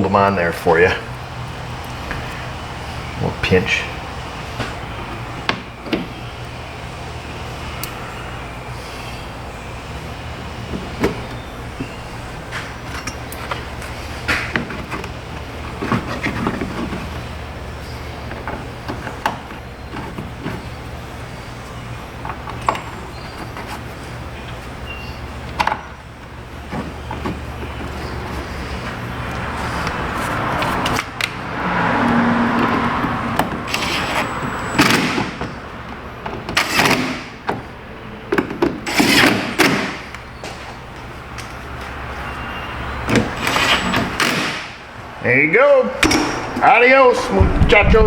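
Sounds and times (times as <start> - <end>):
rushing noise: 46.1 - 48.0
steady low hum: 46.2 - 48.0.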